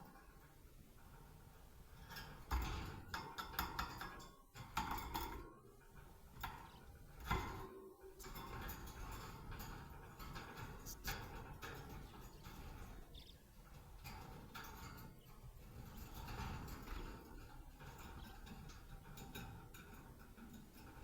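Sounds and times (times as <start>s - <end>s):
bird clicks and rattles: 1.9s - 21.0s
budgerigars chirping: 11.9s - 13.6s.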